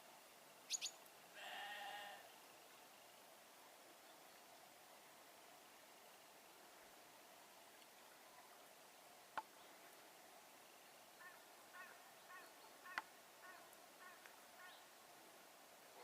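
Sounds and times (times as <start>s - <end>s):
mallard duck calls: 11.2s - 14.8s.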